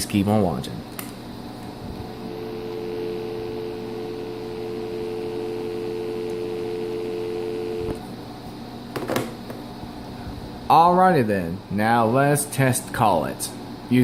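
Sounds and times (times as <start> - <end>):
two-note phone dial tone: 2.3 - 8.0.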